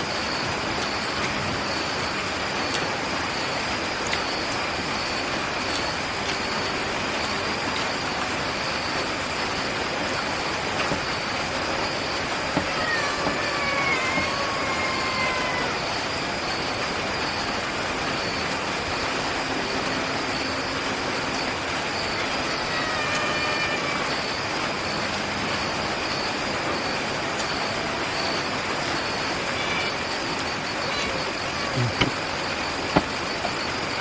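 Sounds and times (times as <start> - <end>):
faint pulsing high tone: 0.0 - 34.0
faint whistle-like glides: 0.0 - 34.0.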